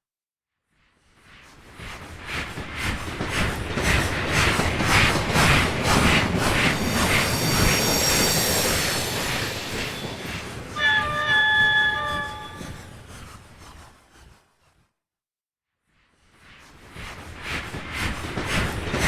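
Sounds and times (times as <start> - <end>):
steam locomotive chuffing: 2.1 - 13.9
steam whistle: 6.8 - 13.1.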